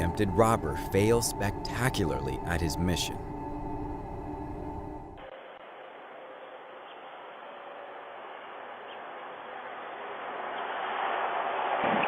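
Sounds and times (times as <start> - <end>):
steady background hiss: 0.0 - 8.3.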